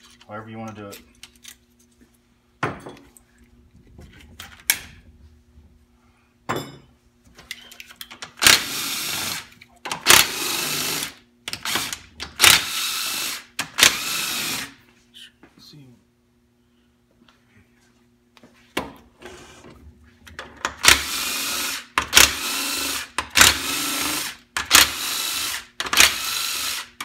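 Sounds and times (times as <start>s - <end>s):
clicks and knocks of tools: 0.0s - 2.0s, 7.4s - 8.4s.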